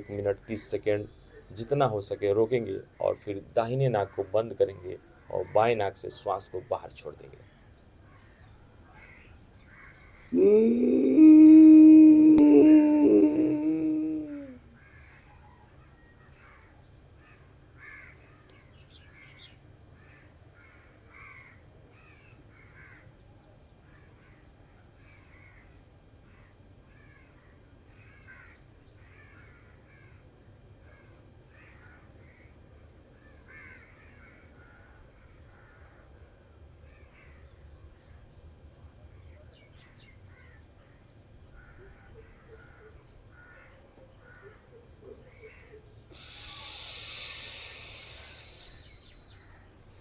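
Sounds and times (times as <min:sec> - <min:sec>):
low background hum: 0:00.0 - 0:50.0
birds chirping: 0:44.1 - 0:50.0.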